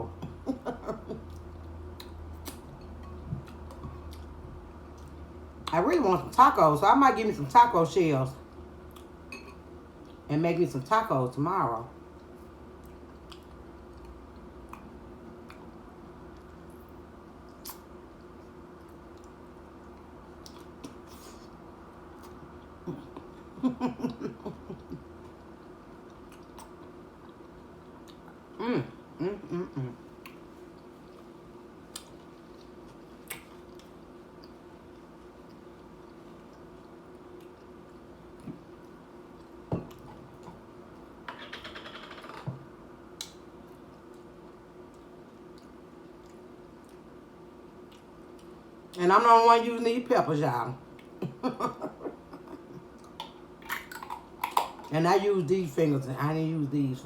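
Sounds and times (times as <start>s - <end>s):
low room hum: 0.0s - 57.0s
woman chewing nachos: 0.2s - 5.7s, 12.1s - 41.8s, 43.1s - 49.0s
woman humming mm: 28.6s - 30.1s.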